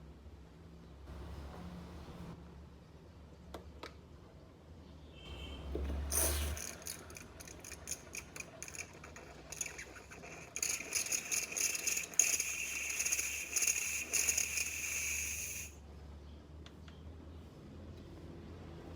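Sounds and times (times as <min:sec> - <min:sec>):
espresso machine hissing: 0:06.1 - 0:15.8.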